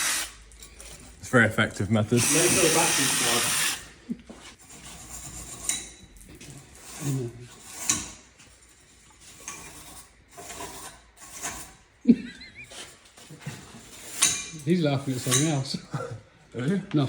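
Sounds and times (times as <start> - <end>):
scraping on metal brake parts: 4.5 - 12.0, 12.7 - 15.7.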